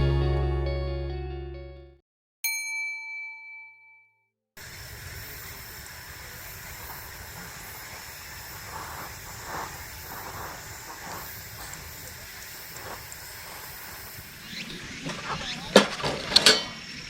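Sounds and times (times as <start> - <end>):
bell-like chime: 2.5 - 4.2
outdoor ambient hiss: 4.6 - 17.0.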